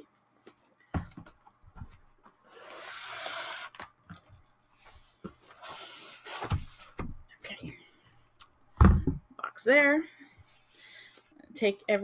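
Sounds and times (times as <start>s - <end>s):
box sliding out of sleeve: 2.5s - 3.8s.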